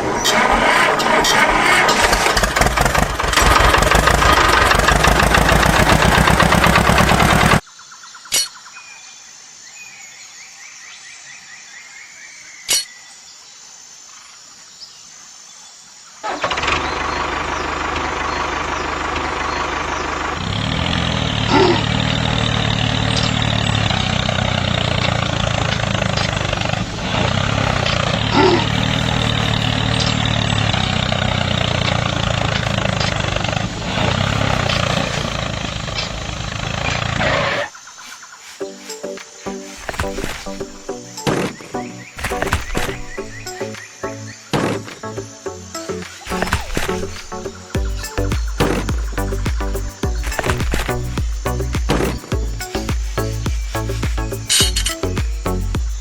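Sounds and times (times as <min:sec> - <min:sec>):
engine running: 0:00.0 - 0:07.6, 0:16.3 - 0:37.7, 0:39.8 - 0:41.2, 0:41.8 - 0:43.8, 0:44.7 - 0:56.0.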